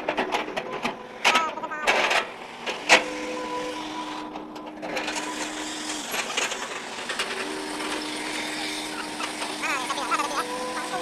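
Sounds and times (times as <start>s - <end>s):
rattling noise: 0.0s - 3.2s
machine whine: 0.0s - 11.0s.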